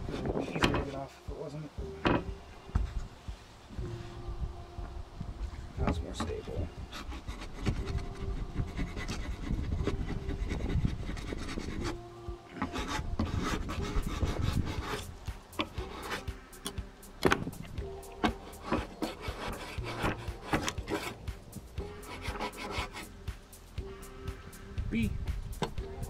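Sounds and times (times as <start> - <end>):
scraping and rubbing on wood: 0.0 - 1.2, 5.9 - 16.8, 17.6 - 23.1.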